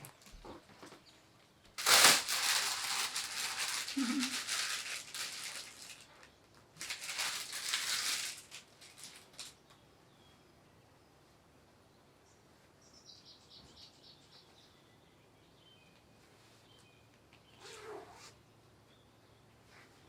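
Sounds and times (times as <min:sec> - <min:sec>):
crinkling rustle of handling: 0:00.0 - 0:09.8.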